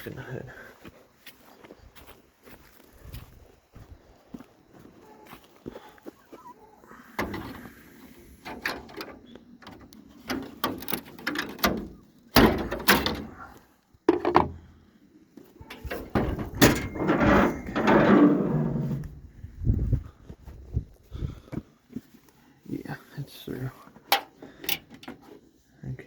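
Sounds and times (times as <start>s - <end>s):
knocks and clunks on truck: 8.4s - 14.7s, 15.7s - 19.2s.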